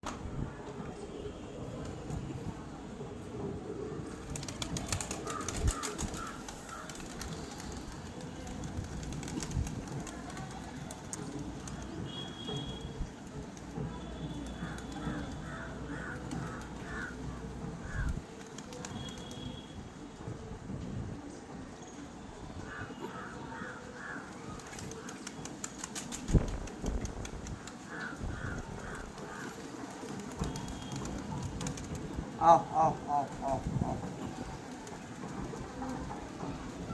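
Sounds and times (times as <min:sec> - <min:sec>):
pigeons cooing: 0:03.6 - 0:12.0, 0:22.8 - 0:36.9
crow cawing: 0:04.9 - 0:07.3, 0:14.6 - 0:17.2, 0:22.7 - 0:25.1, 0:27.8 - 0:29.9.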